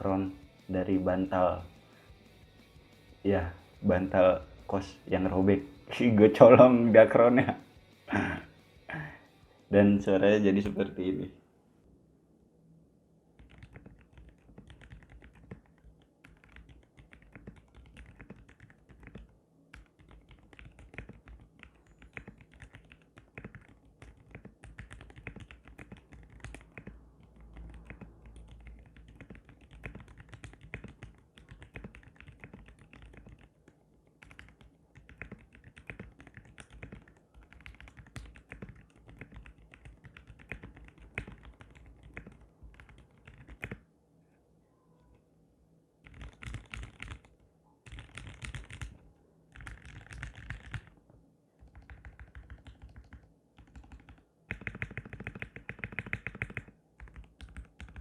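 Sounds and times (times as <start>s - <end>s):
mechanical keyboard typing: 13.4s - 33.6s, 34.2s - 43.8s, 46.0s - 51.0s, 51.6s - 58.0s.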